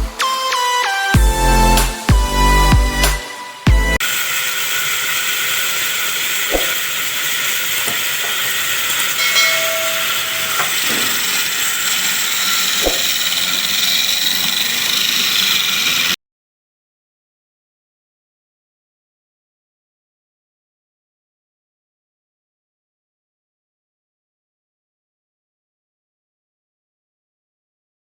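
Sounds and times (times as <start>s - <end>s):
wood lathe hiss: 0.0s - 16.2s.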